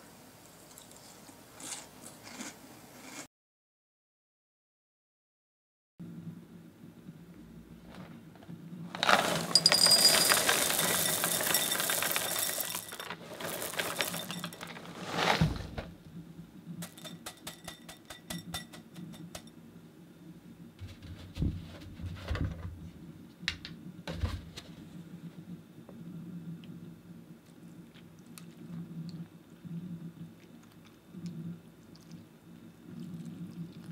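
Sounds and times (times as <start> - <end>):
cereal poured into a bowl: 8.9 - 15.6.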